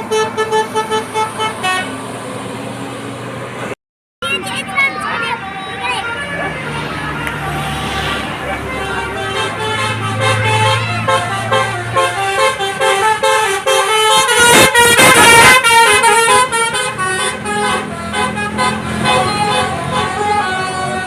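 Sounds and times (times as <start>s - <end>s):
bus engine running: 0.0s - 21.0s
musical air horn playing a tune: 5.5s - 21.0s.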